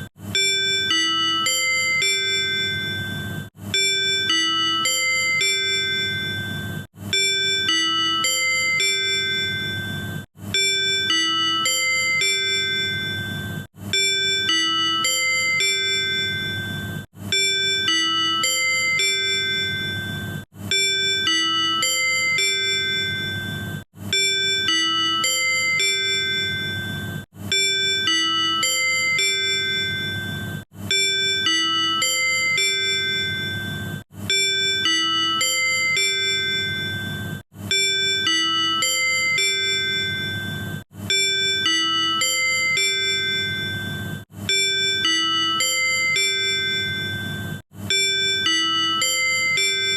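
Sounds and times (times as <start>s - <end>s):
on-board chime phrase: 0.4s - 49.9s.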